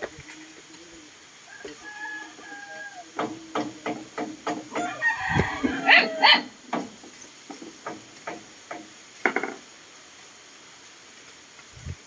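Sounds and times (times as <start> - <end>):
hammering on wood: 3.2 - 5.0, 6.7 - 9.6
short loud calls: 4.7 - 6.6.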